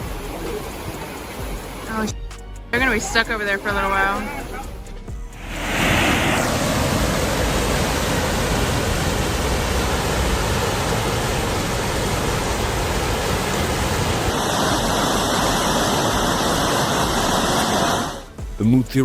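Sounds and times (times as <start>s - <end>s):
floodwater rushing: 0.0s - 2.1s, 2.8s - 18.4s.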